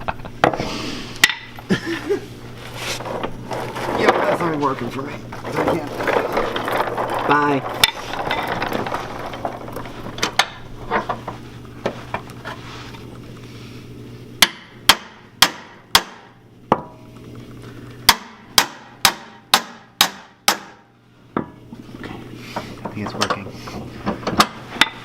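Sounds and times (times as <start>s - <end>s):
hammer striking steel: 14.4s - 16.9s, 18.1s - 20.8s.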